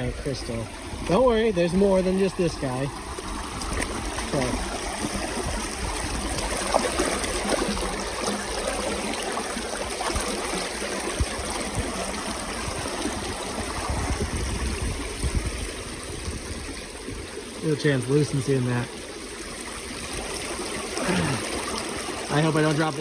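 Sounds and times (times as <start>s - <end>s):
creek water babbling over rocks: 0.0s - 23.0s
small clicks and splashes: 0.4s - 13.9s.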